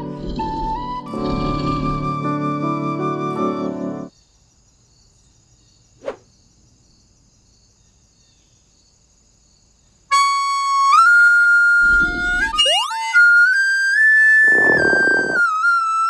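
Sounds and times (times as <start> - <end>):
whistle-like electronic tone: 10.9 - 16.0.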